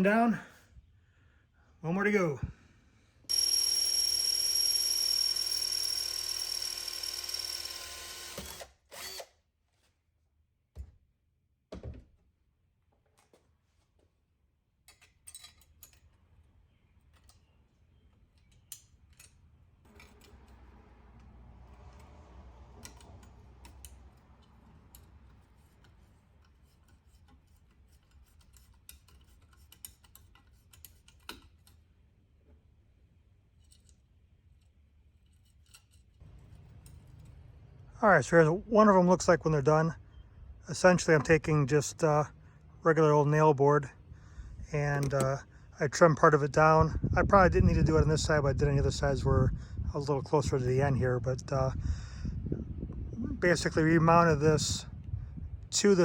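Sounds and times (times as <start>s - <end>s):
electric power tool running: 3.3s - 9.3s.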